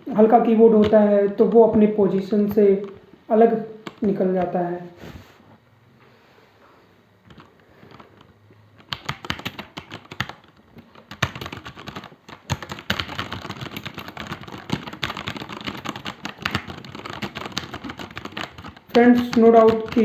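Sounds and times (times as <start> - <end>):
mechanical keyboard typing: 0.7 - 3.0, 7.3 - 20.0.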